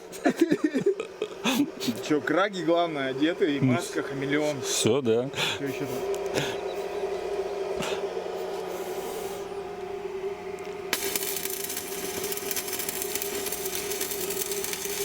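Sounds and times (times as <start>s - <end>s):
steady electrical hum: 0.0s - 15.0s
welding arc crackling: 9.6s - 15.0s.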